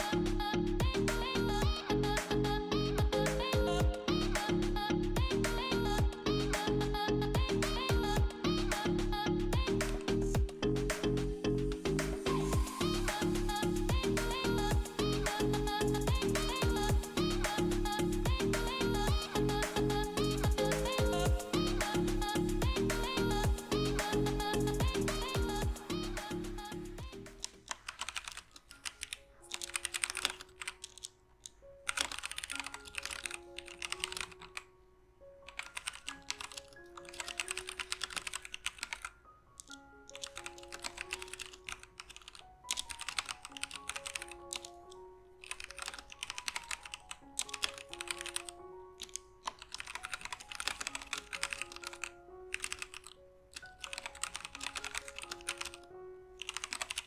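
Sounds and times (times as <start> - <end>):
background music with melody: 0.0 - 57.0
mechanical keyboard typing: 27.3 - 34.6, 35.5 - 57.0.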